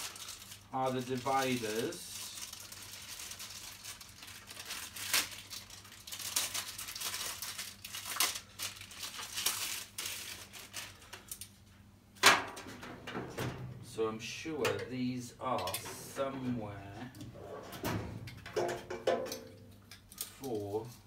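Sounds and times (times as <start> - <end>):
plastic packaging crinkling: 0.0 - 11.6.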